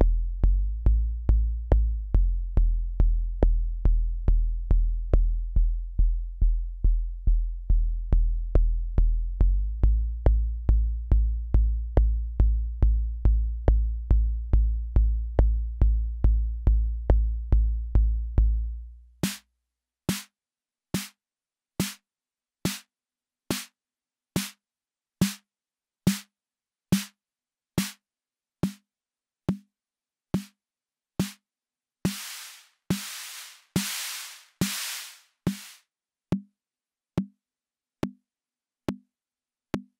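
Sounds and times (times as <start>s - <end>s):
deep bass line: 0.0s - 18.8s
noisy hissing drum hit: 32.1s - 35.8s.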